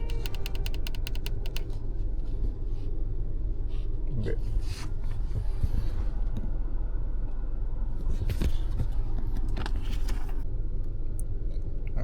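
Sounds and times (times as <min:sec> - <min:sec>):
light clicks: 0:00.0 - 0:01.8
car engine idling: 0:00.0 - 0:02.9.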